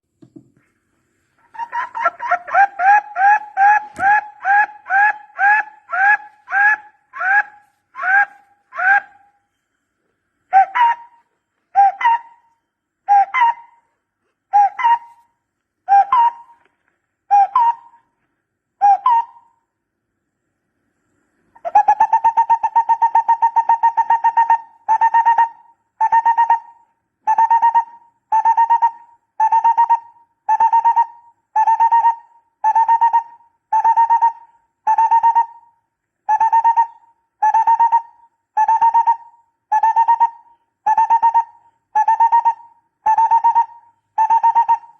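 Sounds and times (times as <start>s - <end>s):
bird calls rising notes and trills: 21.5s - 35.7s, 36.3s - 44.9s.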